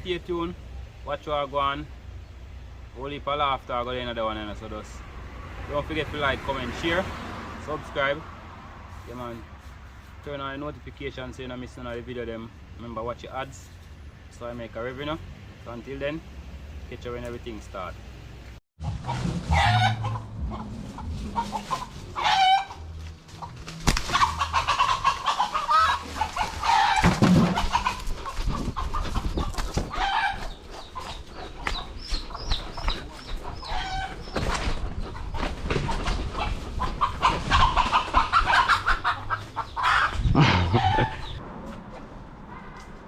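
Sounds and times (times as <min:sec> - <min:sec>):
chickens clucking: 0:18.8 - 0:41.4
rooster crowing: 0:21.4 - 0:22.9.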